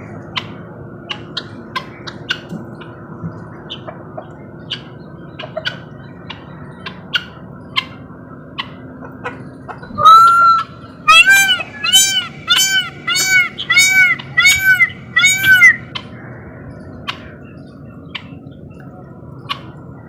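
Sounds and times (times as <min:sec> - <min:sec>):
low background hum: 0:00.0 - 0:20.0
birds chirping: 0:00.2 - 0:20.0
loud drawn-out bird call: 0:09.8 - 0:16.1.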